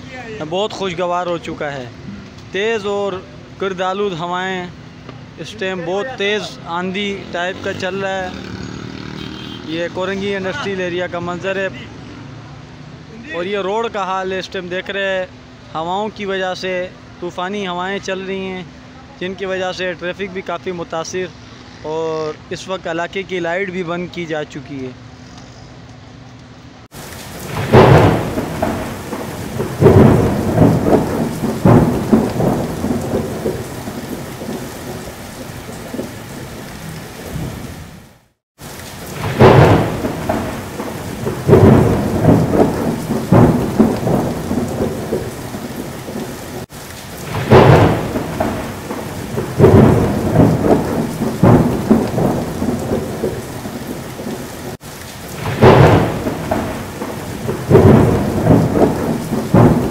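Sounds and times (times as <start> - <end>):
heavy rain: 0.0 - 15.4, 26.8 - 59.9
thunder rumbles: 27.0 - 38.0, 38.9 - 59.9.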